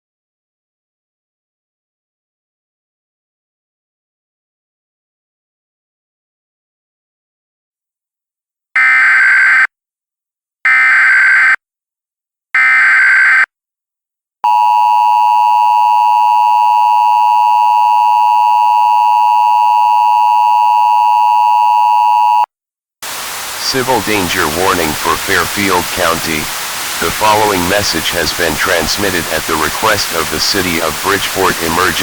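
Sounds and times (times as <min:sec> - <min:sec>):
two-tone attention signal: 0:14.5 - 0:22.5.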